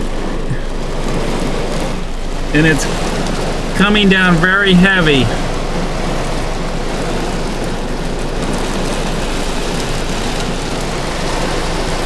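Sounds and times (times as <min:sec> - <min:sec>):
heavy rain on car roof: 0:00.0 - 0:12.0.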